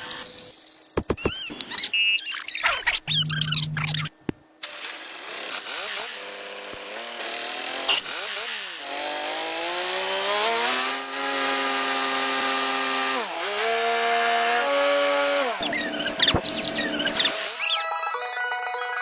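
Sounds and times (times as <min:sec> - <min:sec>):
small motor buzzing: 0:04.7 - 0:17.8.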